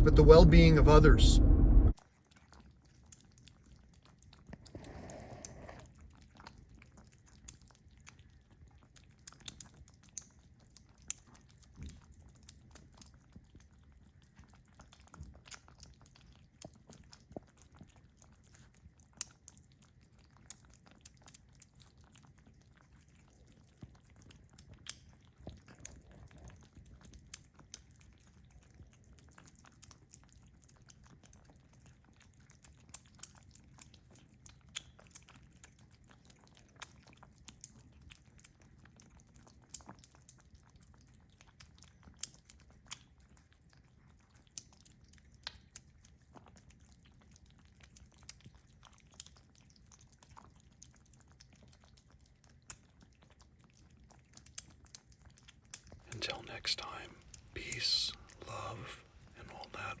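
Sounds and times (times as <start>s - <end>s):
brief soft noise: 0.0s - 2.0s
faint clicks and ticks: 14.3s - 60.0s.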